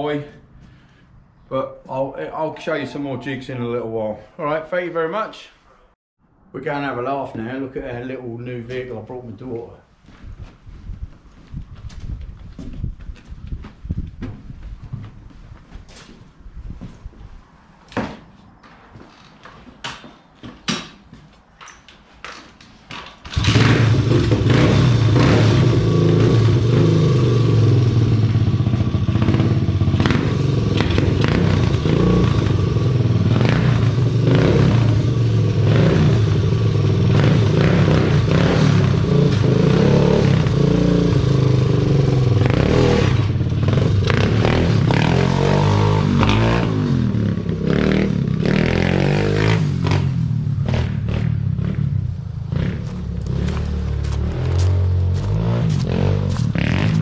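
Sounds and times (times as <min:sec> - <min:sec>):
small engine revving: 0:23.3 - 0:51.8, 0:52.5 - 0:57.0.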